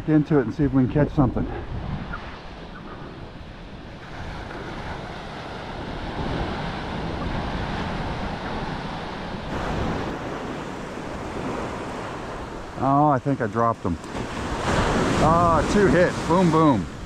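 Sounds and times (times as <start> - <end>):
wind on microphone: 0.0 - 12.8
ocean surf breaking: 0.1 - 17.0.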